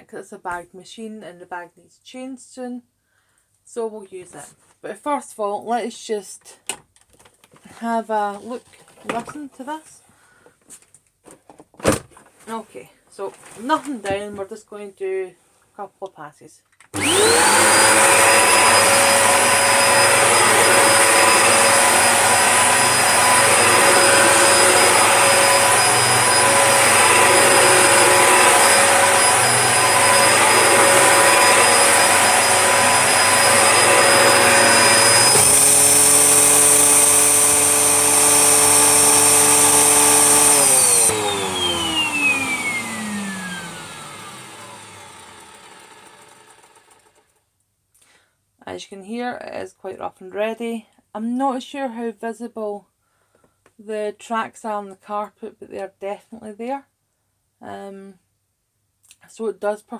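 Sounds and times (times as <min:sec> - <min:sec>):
vacuum cleaner motor whine: 0:17.0 - 0:47.2.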